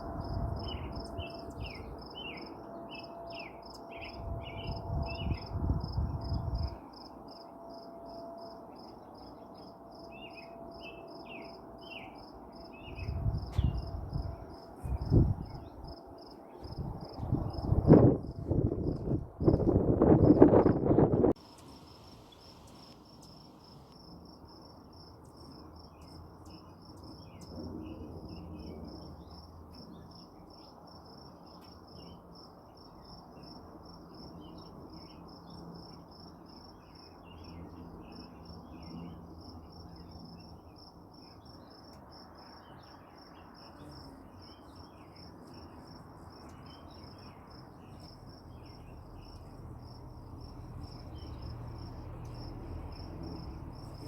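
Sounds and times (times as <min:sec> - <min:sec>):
low hum: 0:00.0 - 0:21.4
insects trilling: 0:00.0 - 0:54.0.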